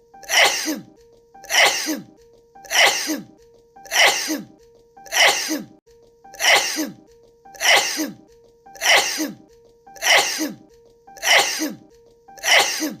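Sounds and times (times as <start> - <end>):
woman sneezing: 0.2 - 0.9, 1.5 - 2.1, 2.7 - 3.3, 3.9 - 4.5, 5.1 - 5.8, 6.4 - 7.0, 7.6 - 8.2, 8.8 - 9.4, 10.0 - 10.6, 11.2 - 11.8, 12.4 - 13.0.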